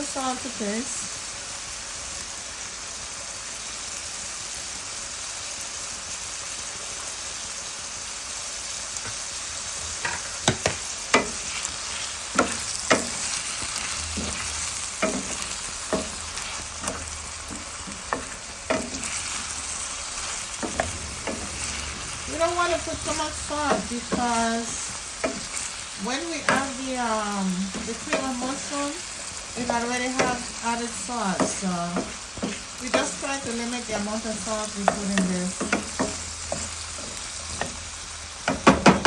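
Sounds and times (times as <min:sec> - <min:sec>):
vegetables sizzling in oil: 0:00.0 - 0:39.0
spoon clacking against pan: 0:10.0 - 0:11.6, 0:12.2 - 0:21.8, 0:22.4 - 0:26.8, 0:27.7 - 0:28.8, 0:29.6 - 0:39.0.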